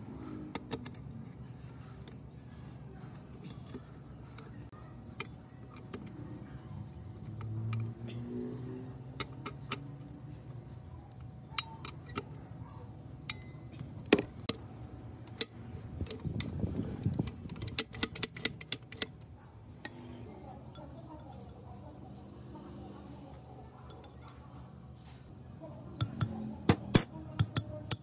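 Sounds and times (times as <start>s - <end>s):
metal parts clicking and clinking: 0.4s - 8.0s, 13.2s - 21.2s, 26.0s - 28.0s.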